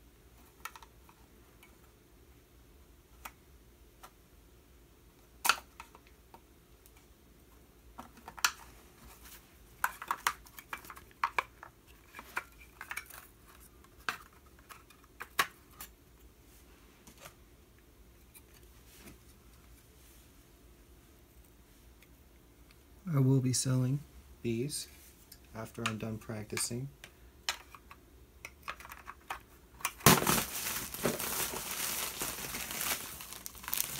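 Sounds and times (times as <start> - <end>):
small hard objects clattering: 28.7 - 33.9.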